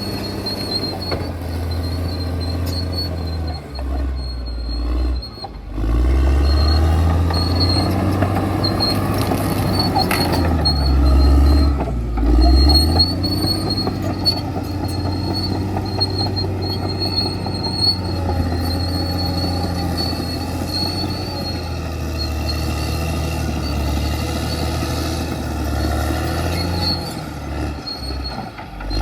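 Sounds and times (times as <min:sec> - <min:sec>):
bulldozer diesel engine under load: 0:00.0 - 0:29.0
steel tracks squealing: 0:00.0 - 0:29.0.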